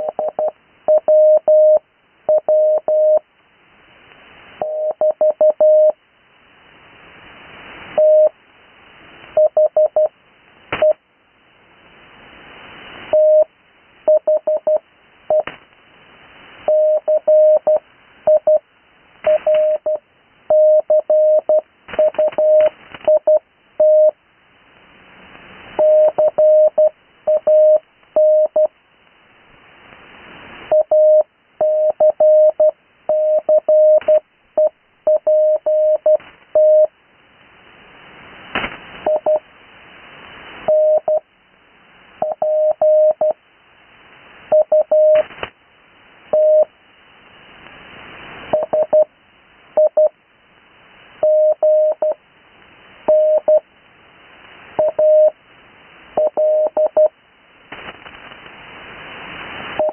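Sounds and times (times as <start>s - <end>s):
morse code tone: 0.0s - 3.2s, 19.3s - 24.2s, 25.8s - 28.7s, 30.7s - 36.9s, 48.6s - 49.1s, 51.2s - 52.2s, 53.1s - 53.6s, 56.2s - 57.1s
static crackles: 0.0s - 59.9s
radio band hiss: 45.1s - 46.3s, 57.4s - 59.9s.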